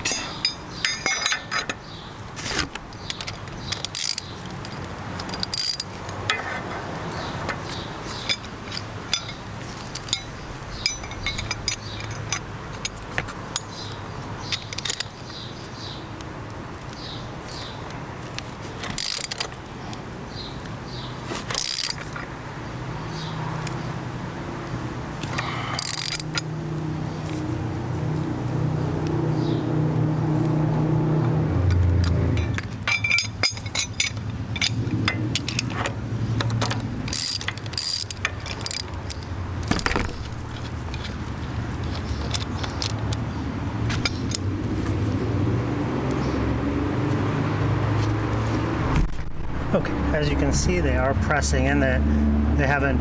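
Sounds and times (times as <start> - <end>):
metal knocks of tool on chain: 0.0 - 1.8, 7.5 - 13.7, 31.7 - 41.1
ratchet wrench clicking: 3.1 - 6.4, 18.9 - 19.6, 21.4 - 22.2, 25.2 - 26.5, 36.4 - 39.3.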